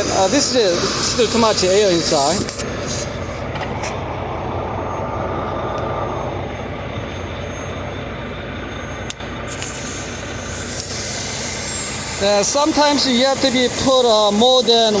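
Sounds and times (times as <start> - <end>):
rushing hiss: 0.0 - 3.2, 9.5 - 15.0
vehicle engine rumbling: 0.0 - 15.0.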